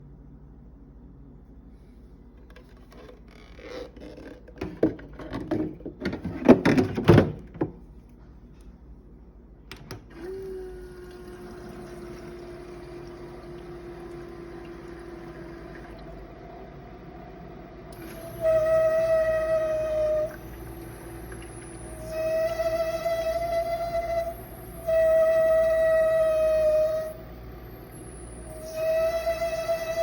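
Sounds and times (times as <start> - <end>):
ice maker droning hum: 0.0 - 30.0.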